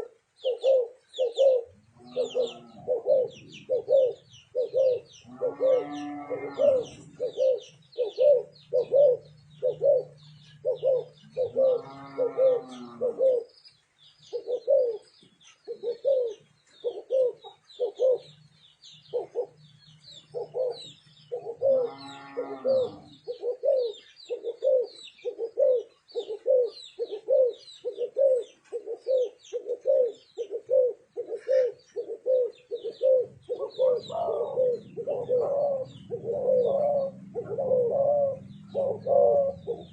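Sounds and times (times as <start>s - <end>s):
doves cooing: 0.0s - 13.6s, 14.2s - 39.9s
small birds chirping: 0.0s - 39.9s.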